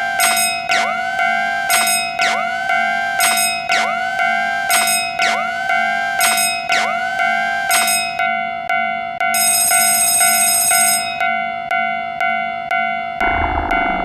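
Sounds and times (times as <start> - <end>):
level-crossing warning bell clanging: 3.2 - 8.3, 9.3 - 11.4
synthesizer music: 13.2 - 14.0.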